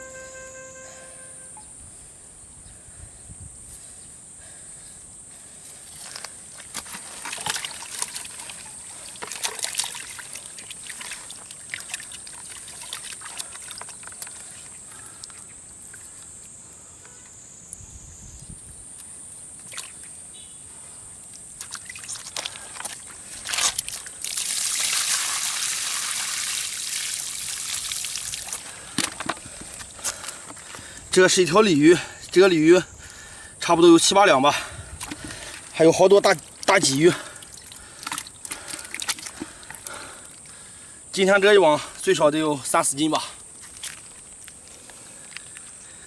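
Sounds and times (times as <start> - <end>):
high insect buzz: 0.0 - 2.1
water trickling and splashing: 5.8 - 16.3, 19.6 - 20.2, 21.3 - 32.4, 34.0 - 45.3
rush of water: 6.6 - 14.8, 21.6 - 29.3.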